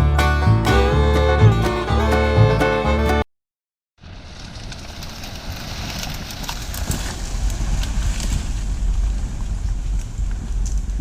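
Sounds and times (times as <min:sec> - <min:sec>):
small clicks and rustles: 0:04.3 - 0:08.7, 0:09.4 - 0:11.0
wind on microphone: 0:05.2 - 0:11.0.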